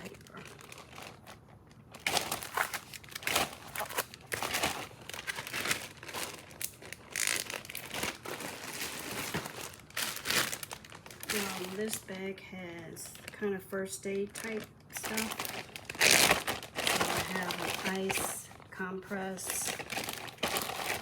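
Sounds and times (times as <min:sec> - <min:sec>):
packaging crinkling: 0:00.0 - 0:12.1, 0:14.2 - 0:18.7, 0:19.4 - 0:21.0.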